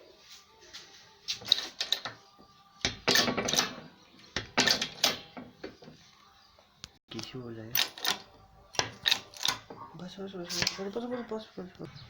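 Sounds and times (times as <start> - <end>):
hydraulic press metallic clattering: 2.8 - 5.9, 7.7 - 9.8.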